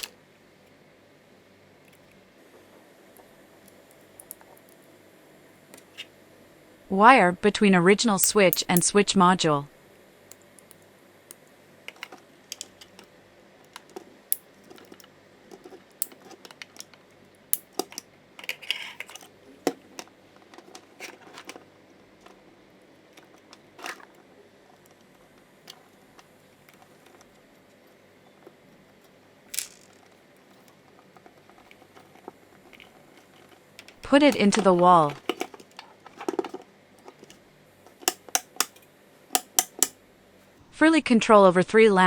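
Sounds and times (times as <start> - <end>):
clicks and rustles of wires: 10.3 - 40.0.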